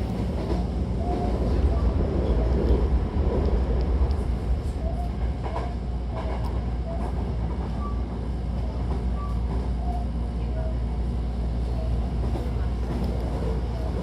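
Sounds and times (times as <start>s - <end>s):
electric train rumbling: 0.0s - 14.0s.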